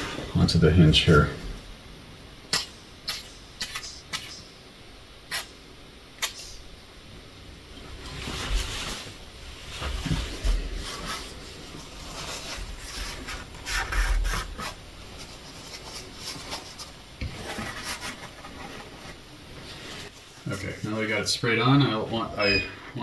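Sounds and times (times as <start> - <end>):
aerosol spray hissing: 6.2 - 6.7
rubbing and rustling handling noise: 7.8 - 22.3.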